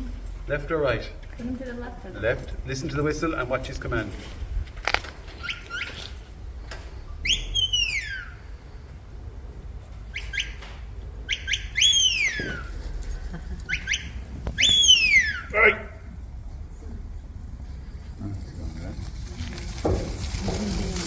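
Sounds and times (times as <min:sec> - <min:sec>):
whistled commands: 0:05.2 - 0:06.3, 0:07.2 - 0:08.5, 0:10.0 - 0:16.1.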